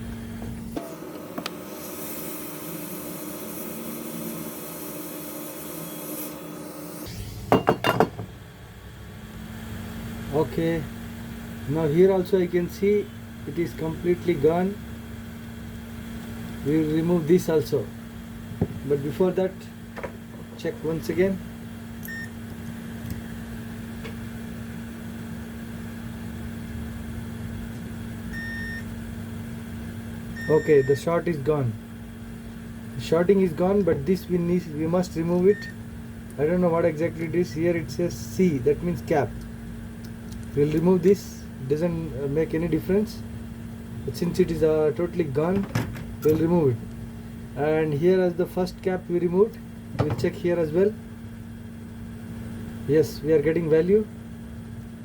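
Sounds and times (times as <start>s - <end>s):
electrical hum: 0.0s - 55.0s
multimeter high beep: 22.0s - 22.4s, 28.3s - 28.9s, 30.4s - 31.1s, 35.4s - 35.8s.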